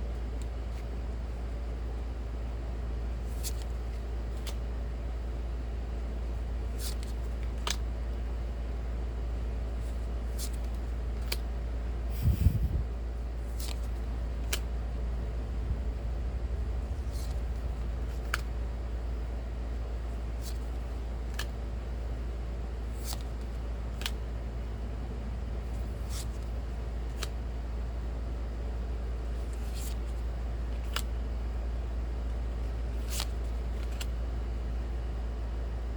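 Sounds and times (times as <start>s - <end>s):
steady low hum: 0.0s - 35.9s
card handling bump: 16.9s - 18.7s
trading cards clicking: 21.3s - 21.6s, 24.0s - 24.2s.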